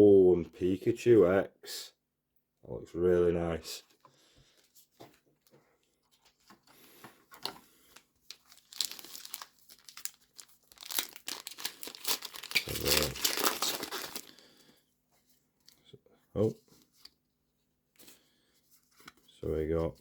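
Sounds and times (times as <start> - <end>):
foil wrapper crinkling and tearing: 7.9 - 14.5.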